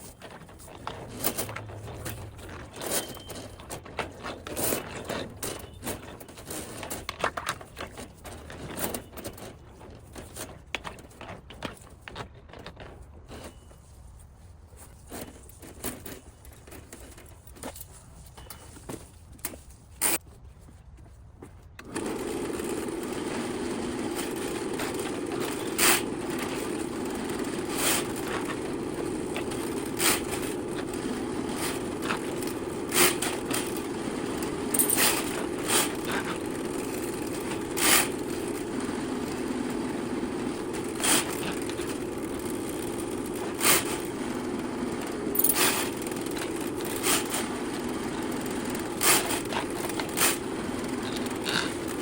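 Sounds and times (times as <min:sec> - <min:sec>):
drain cleaning machine motor: 0:21.8 - 0:52.0.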